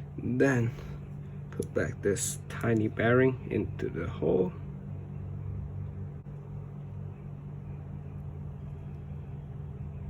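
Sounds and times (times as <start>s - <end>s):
low machinery hum: 0.0s - 10.0s.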